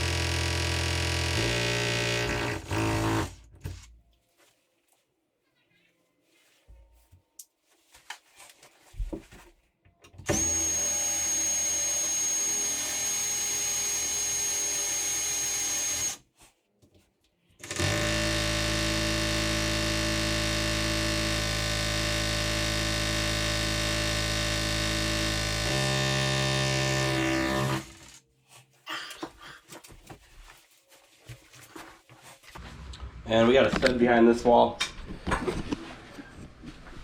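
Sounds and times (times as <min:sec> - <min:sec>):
power drill boring into wall: 0:00.0 - 0:03.4, 0:10.3 - 0:16.2, 0:17.6 - 0:28.2.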